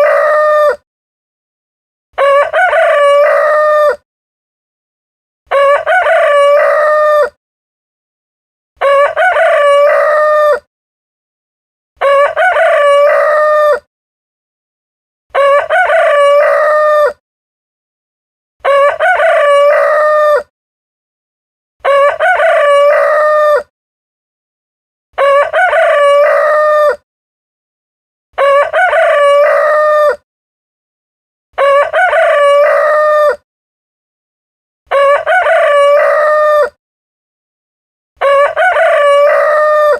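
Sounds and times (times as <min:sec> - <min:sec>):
rooster crowing: 0:00.0 - 0:00.8, 0:02.2 - 0:04.0, 0:05.5 - 0:07.4, 0:08.8 - 0:10.7, 0:12.0 - 0:13.9, 0:15.3 - 0:17.2, 0:18.6 - 0:20.5, 0:21.8 - 0:23.7, 0:25.2 - 0:27.0, 0:28.4 - 0:30.2, 0:31.6 - 0:33.4, 0:34.9 - 0:36.8, 0:38.2 - 0:39.9.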